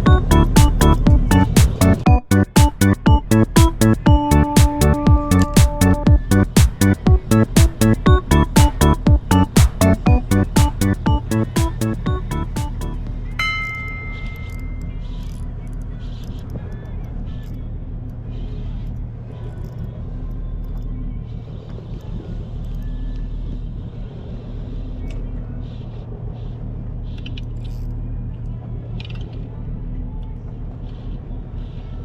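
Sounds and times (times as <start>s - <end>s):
engine humming: 0.0s - 15.0s
short ringing tone: 13.4s - 15.0s.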